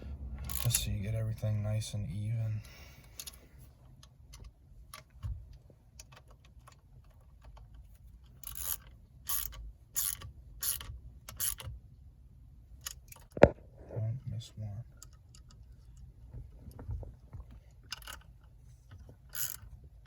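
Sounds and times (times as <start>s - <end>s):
wrench ratcheting: 0.5s - 0.8s, 8.3s - 11.7s, 19.3s - 19.7s.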